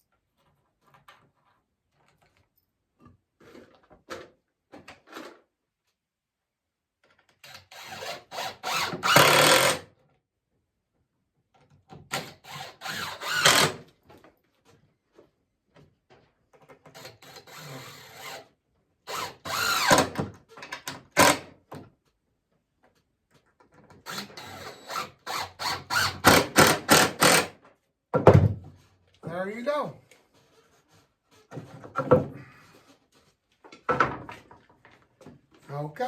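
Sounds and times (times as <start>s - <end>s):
power drill driving screws into wood: 7.4s - 9.8s, 12.1s - 13.9s, 16.9s - 18.5s, 19.1s - 20.3s, 20.9s - 21.5s, 24.0s - 27.6s.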